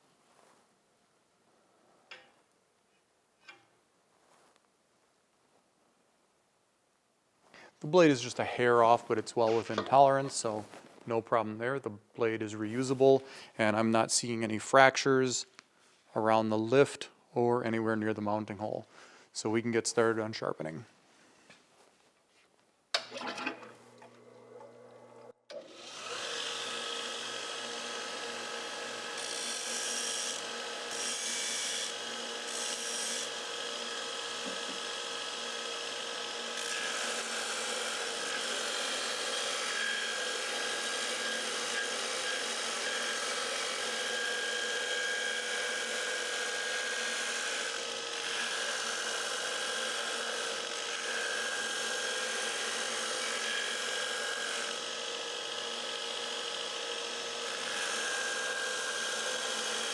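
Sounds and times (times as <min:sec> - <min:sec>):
belt grinder whining: 0:23.0 - 0:59.9.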